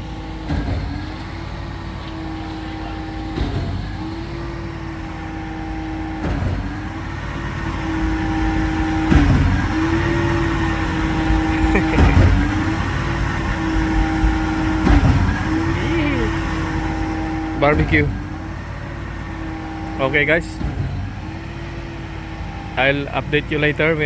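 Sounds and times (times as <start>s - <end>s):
engine running: 0.0s - 24.0s
engine knock: 6.0s - 15.8s, 16.4s - 22.1s.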